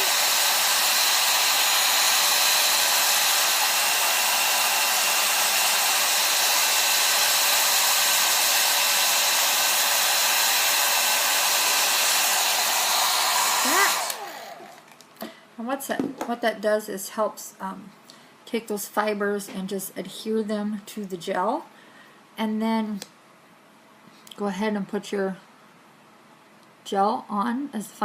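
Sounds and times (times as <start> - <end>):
hair dryer running: 0.0 - 15.0.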